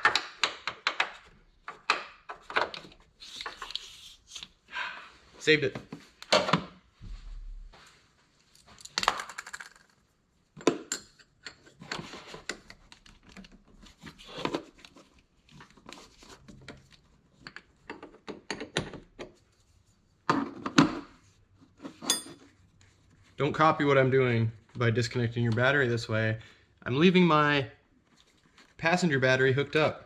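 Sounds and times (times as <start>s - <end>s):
metal tools clinking: 22.0s - 22.5s.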